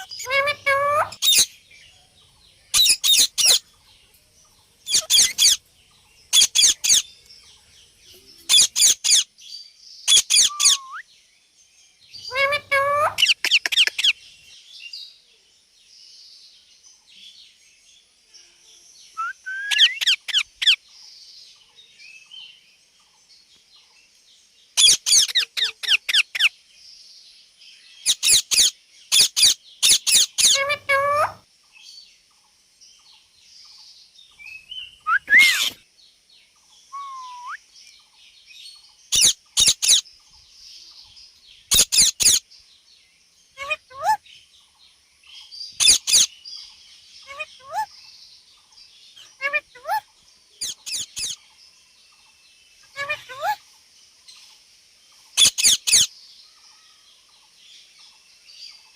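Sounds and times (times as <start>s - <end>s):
parakeet shrill squeaky calls: 0.0s - 1.5s, 2.7s - 3.6s, 4.9s - 5.6s, 6.3s - 7.1s, 8.5s - 9.3s, 10.1s - 11.0s, 12.2s - 14.1s, 19.2s - 20.8s, 24.8s - 26.5s, 28.0s - 31.4s, 35.1s - 35.8s, 39.1s - 40.0s, 41.7s - 42.4s, 43.6s - 44.2s, 45.8s - 46.3s, 47.3s - 47.9s, 49.4s - 50.0s, 50.6s - 51.4s, 53.0s - 53.6s, 55.4s - 56.1s.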